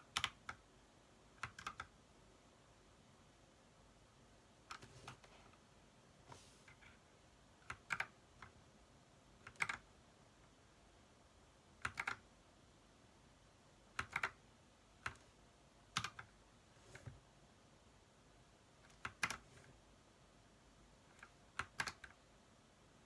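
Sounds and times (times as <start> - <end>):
mechanical keyboard keystrokes: 1.4 - 1.9, 7.6 - 8.5, 9.4 - 9.8, 11.8 - 12.2, 14.0 - 14.4, 16.0 - 16.3, 18.9 - 19.5, 21.1 - 22.2.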